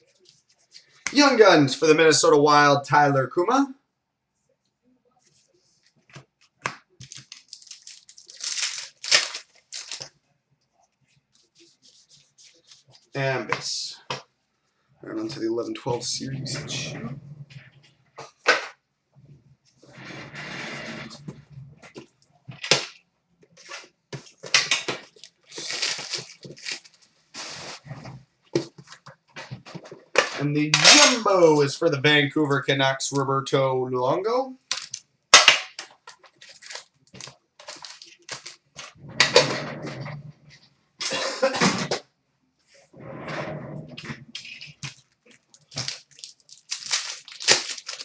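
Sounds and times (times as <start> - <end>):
foil wrapper crinkling and tearing: 7.0 - 10.1, 24.2 - 27.5, 35.8 - 38.8, 44.8 - 48.0
packaging being torn open: 7.0 - 10.1, 25.0 - 27.0, 36.4 - 38.6, 44.8 - 48.0.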